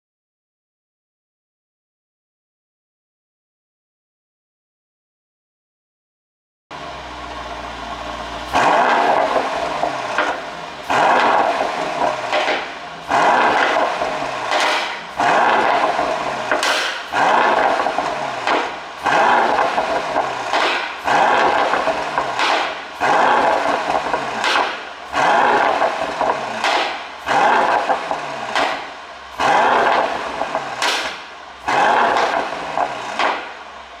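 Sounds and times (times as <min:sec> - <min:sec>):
car engine revving: 0:06.7 - 0:34.0
exhaust pops and crackles: 0:07.1 - 0:33.9.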